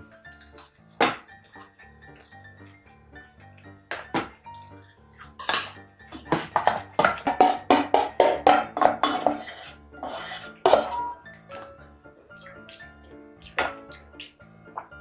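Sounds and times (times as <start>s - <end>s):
background music: 0.0s - 15.0s
cutlery clinking on dishes: 5.2s - 11.7s, 13.4s - 13.8s.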